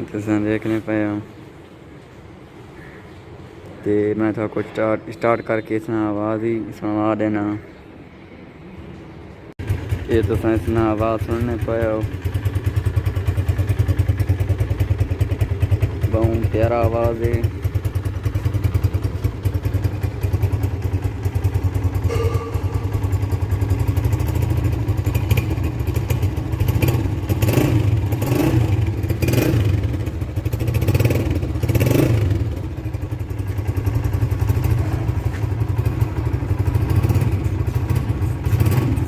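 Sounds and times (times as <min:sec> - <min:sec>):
motorcycle engine idling: 0:09.6 - 0:39.0.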